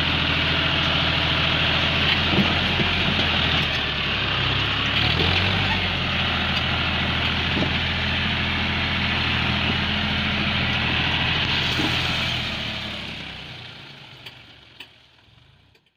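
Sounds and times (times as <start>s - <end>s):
heavy diesel engine running: 0.0s - 15.9s.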